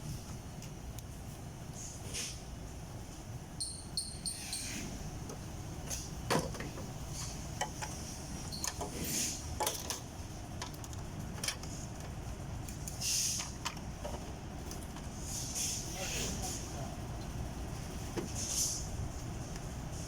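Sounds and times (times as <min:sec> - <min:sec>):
low rumble of machinery: 0:00.0 - 0:20.0
short hisses: 0:13.0 - 0:13.4.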